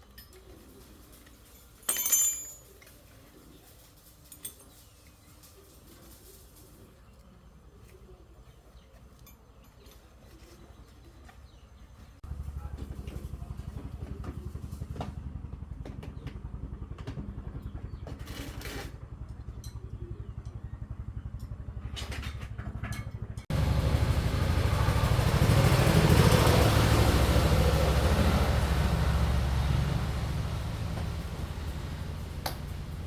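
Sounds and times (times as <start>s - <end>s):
small gasoline engine running: 12.2s - 33.0s.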